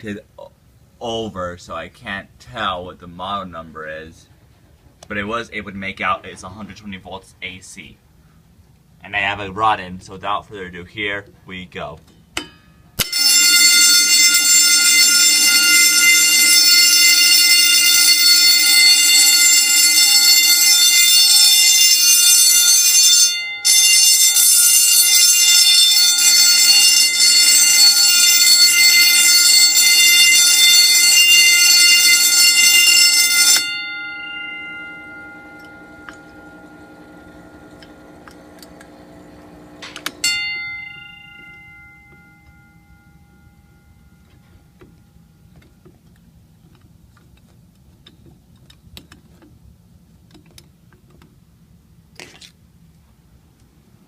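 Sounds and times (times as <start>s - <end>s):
fire alarm bell ringing: 13.0s - 38.8s, 39.8s - 45.5s.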